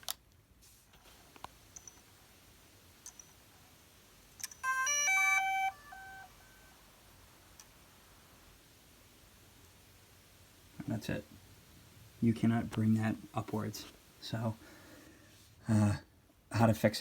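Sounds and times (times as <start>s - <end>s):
stepped beeping startup chime: 4.6s - 6.8s.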